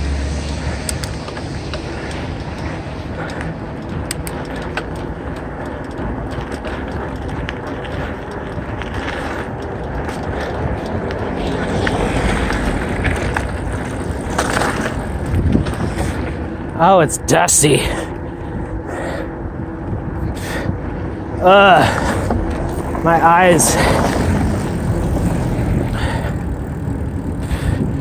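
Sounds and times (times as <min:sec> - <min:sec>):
bike tyre noise: 0:00.0 - 0:28.0
wind rushing over microphone: 0:00.0 - 0:28.0
small clicks and rattles: 0:00.4 - 0:16.3.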